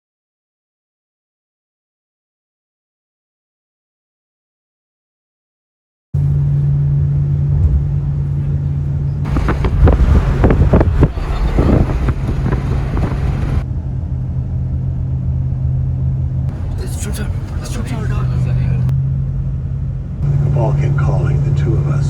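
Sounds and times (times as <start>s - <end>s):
car cabin road rumble: 6.2s - 22.0s
rough rushing noise with crackles: 9.2s - 13.7s.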